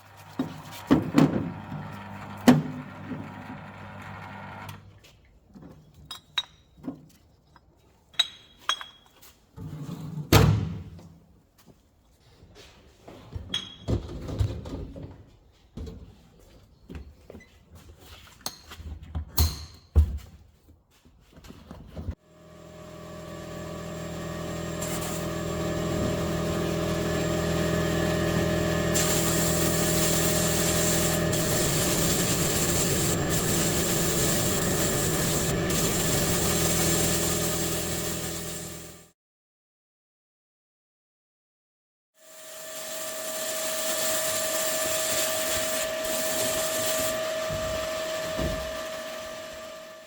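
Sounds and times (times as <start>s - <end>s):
workshop machine motor humming: 0.0s - 4.8s, 22.2s - 39.1s, 42.5s - 50.0s.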